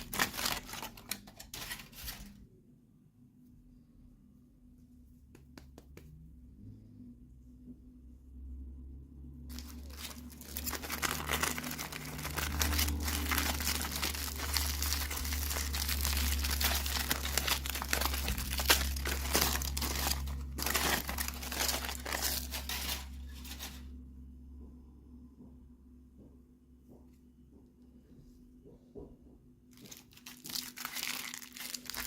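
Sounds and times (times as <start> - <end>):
packaging crinkling and tearing: 0.0 - 2.4, 9.5 - 23.8, 29.7 - 32.0.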